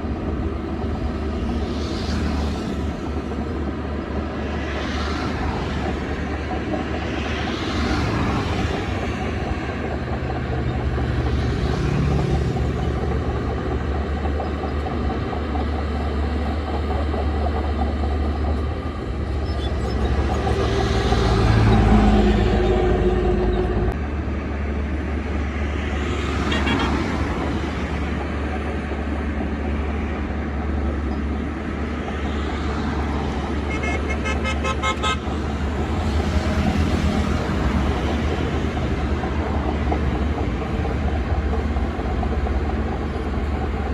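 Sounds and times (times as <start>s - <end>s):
bulldozer diesel engine running: 0.0s - 43.9s.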